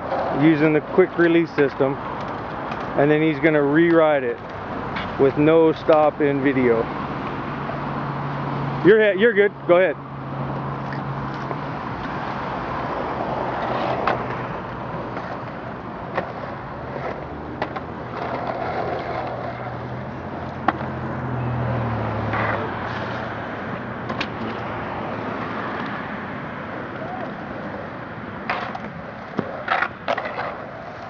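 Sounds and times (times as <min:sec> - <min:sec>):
skateboard rolling on pavement: 0:00.0 - 0:31.0
skateboard clacks: 0:13.4 - 0:21.0, 0:28.4 - 0:31.0.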